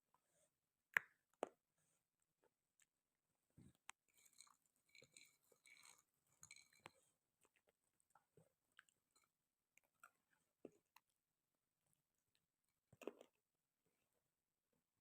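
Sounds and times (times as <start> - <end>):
chewing crunchy food: 4.0 - 11.2, 12.9 - 13.4.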